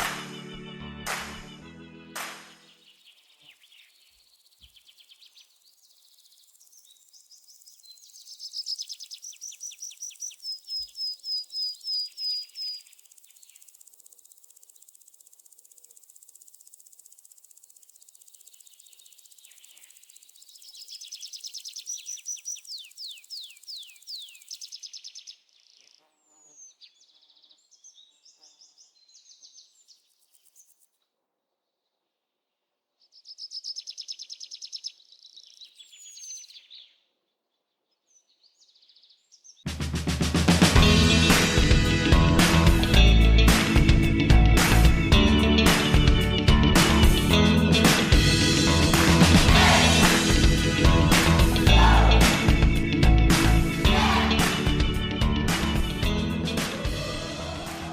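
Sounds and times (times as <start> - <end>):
birds chirping: 2.3 - 30.9, 33.0 - 39.7, 40.8 - 57.9
faint insect hum: 2.5 - 31.0, 31.6 - 37.0.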